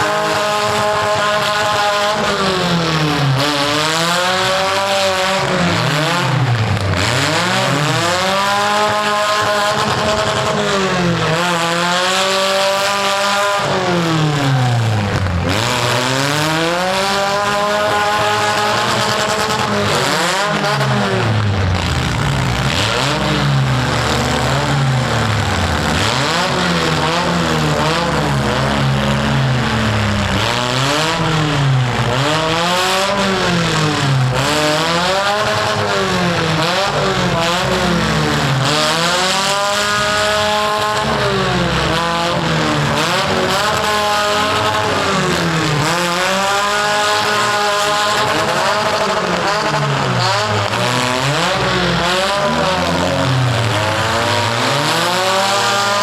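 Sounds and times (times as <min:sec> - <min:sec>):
car engines revving: 0:00.0 - 0:56.0.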